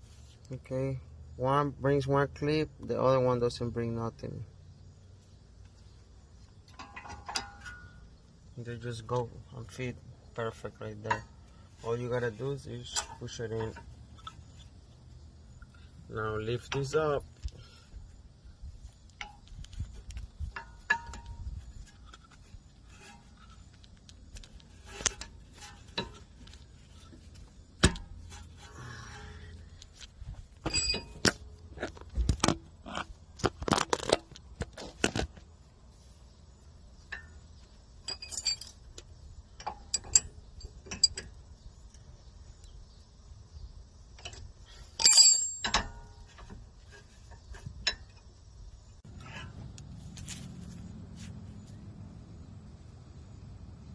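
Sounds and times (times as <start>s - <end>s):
metal brake parts clinking: 6.6s - 8.2s, 12.6s - 17.9s, 19.2s - 32.6s, 37.0s - 41.4s, 44.2s - 48.4s.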